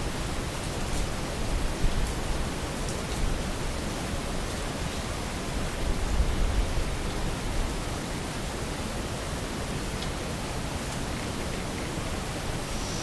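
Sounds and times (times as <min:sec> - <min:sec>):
background hiss: 0:12.6 - 0:13.0.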